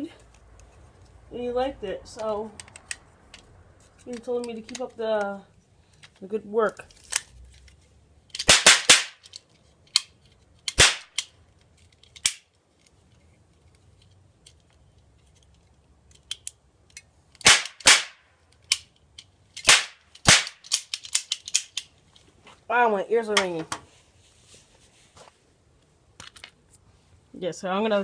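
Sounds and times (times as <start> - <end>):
toy cap bangs: 8.3 - 9.3, 10.7 - 11.3, 17.4 - 18.2, 19.6 - 21.8.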